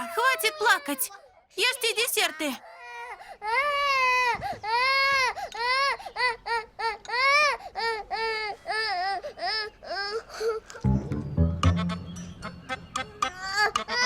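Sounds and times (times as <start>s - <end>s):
young child crying: 0.0s - 1.4s.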